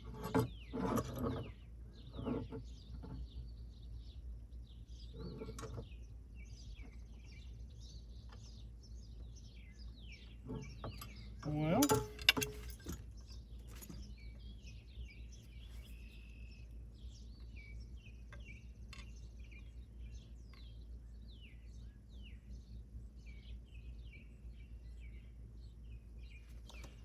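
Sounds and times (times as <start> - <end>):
small birds chirping: 0.0 - 27.0.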